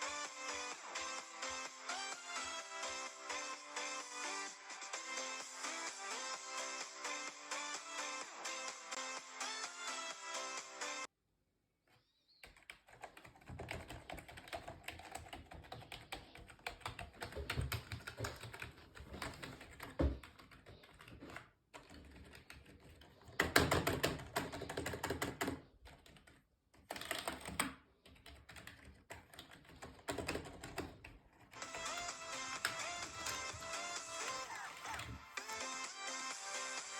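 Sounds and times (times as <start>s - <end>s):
fast keyboard typing: 12.4s - 35.8s.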